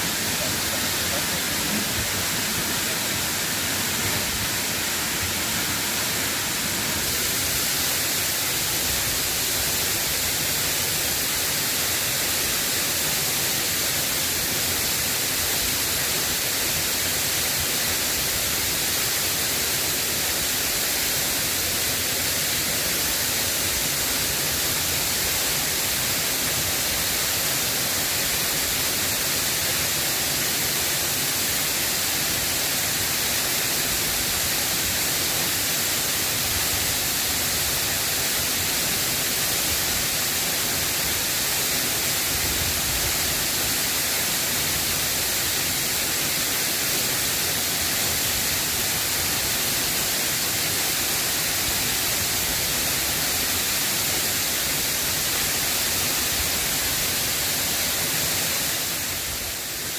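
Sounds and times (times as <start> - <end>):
rain falling: 0.0 - 10.4.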